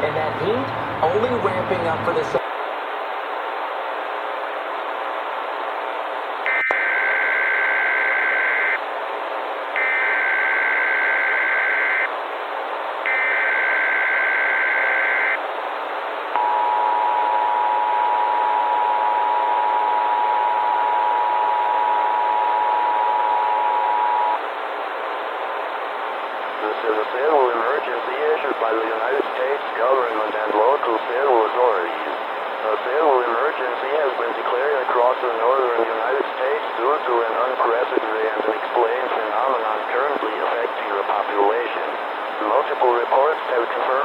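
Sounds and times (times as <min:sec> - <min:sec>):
radio static: 0:06.2 - 0:08.9, 0:09.7 - 0:12.1, 0:13.1 - 0:44.0.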